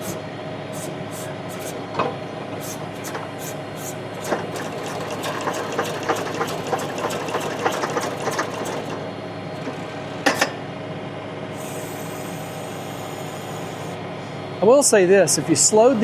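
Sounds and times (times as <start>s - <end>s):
tractor engine running: 0.1s - 10.2s.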